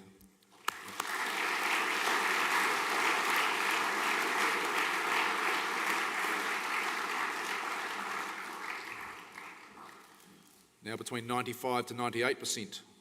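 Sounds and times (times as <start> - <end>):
audience applauding: 0.6 - 10.2.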